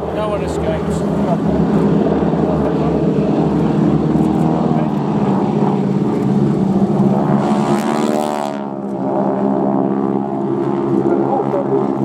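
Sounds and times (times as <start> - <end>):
biplane engines droning overhead: 0.0 - 12.0.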